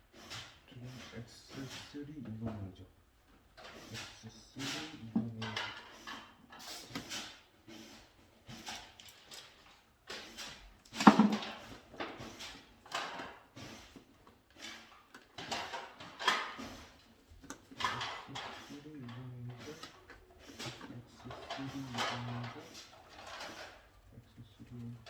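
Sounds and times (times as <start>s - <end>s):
tools scraping and clicking: 8.5s - 25.0s.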